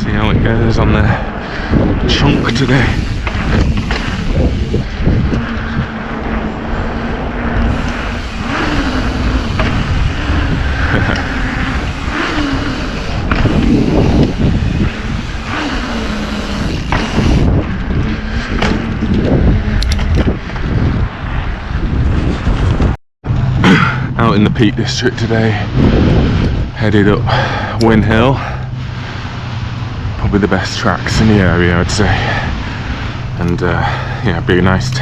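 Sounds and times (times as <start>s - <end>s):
vehicle engine revving: 1.4s - 21.0s.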